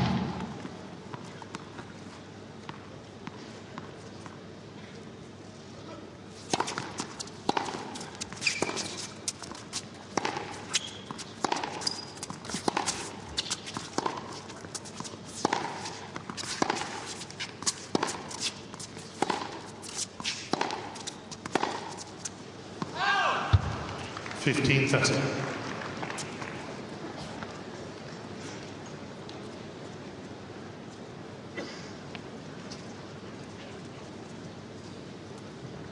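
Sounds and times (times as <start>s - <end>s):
shoes squeaking on court: 6.4s - 22.6s
tennis racket striking ball: 6.5s - 22.9s
tennis ball bouncing: 6.5s - 24.0s.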